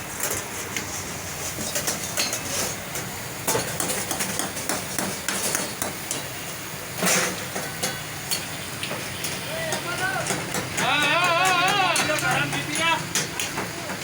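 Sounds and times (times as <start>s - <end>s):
metal cooking utensils clanking: 0.2s - 14.0s.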